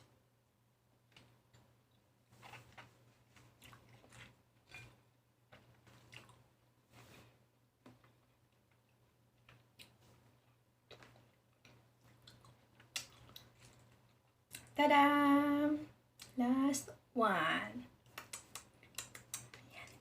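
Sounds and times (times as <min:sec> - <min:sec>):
wet chewing and mouth smacks: 0:01.1 - 0:04.8, 0:05.5 - 0:06.5, 0:07.8 - 0:14.8, 0:18.0 - 0:19.6.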